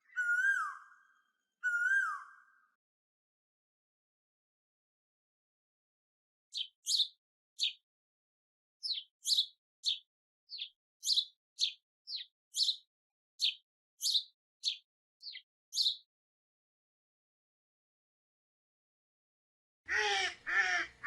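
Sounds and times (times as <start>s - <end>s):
sparrow chirping: 6.5s - 7.8s, 8.8s - 16.1s.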